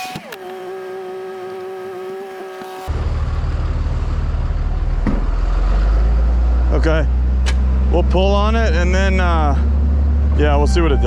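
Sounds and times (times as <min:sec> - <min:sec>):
mechanical whine: 0:00.0 - 0:03.8
deep diesel engine rumble: 0:02.9 - 0:11.0.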